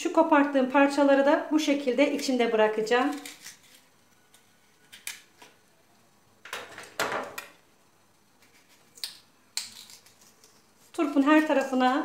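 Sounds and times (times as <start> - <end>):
knife scraping radish: 2.8 - 5.1, 8.4 - 11.8.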